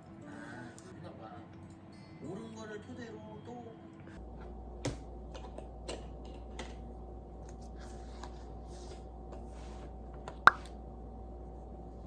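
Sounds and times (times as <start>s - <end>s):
faint steady hum: 3.3s - 12.0s.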